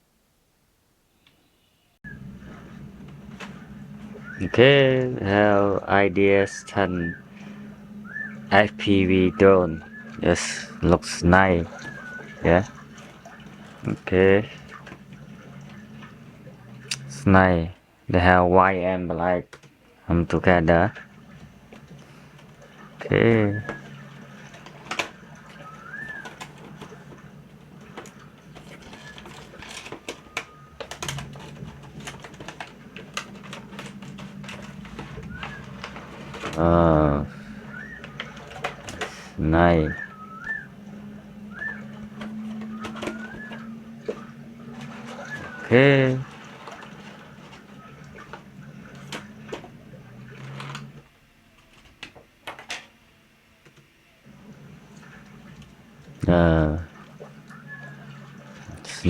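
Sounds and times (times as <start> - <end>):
low hum: 0.0 - 51.8
plastic parts clicking: 24.5 - 27.2, 27.8 - 36.6, 37.7 - 39.2, 41.6 - 44.2.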